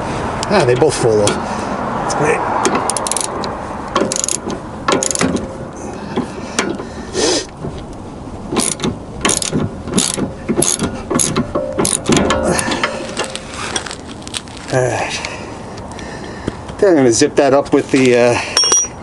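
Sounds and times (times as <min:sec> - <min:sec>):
ratchet wrench clicking: 0:02.9 - 0:03.4, 0:04.1 - 0:05.3, 0:08.6 - 0:12.1
metal tools clinking: 0:18.4 - 0:19.0.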